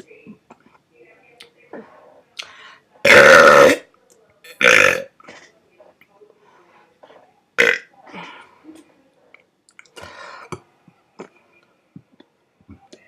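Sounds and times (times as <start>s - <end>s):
breath-like sounds: 10.0s - 10.6s.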